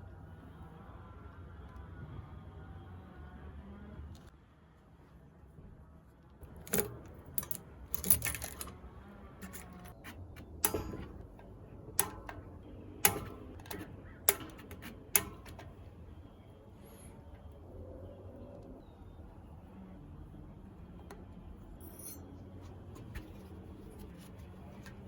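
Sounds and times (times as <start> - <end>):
metallic tool clicks and clinks: 6.5 - 8.8, 9.4 - 12.4, 21.8 - 22.3.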